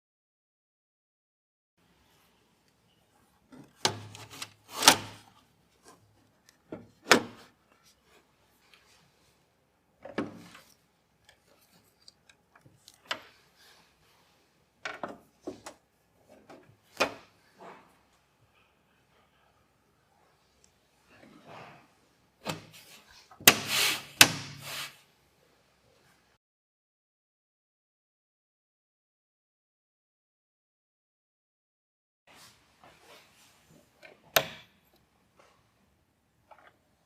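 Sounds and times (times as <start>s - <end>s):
short rubbing scrapes: 23.6s - 25.0s.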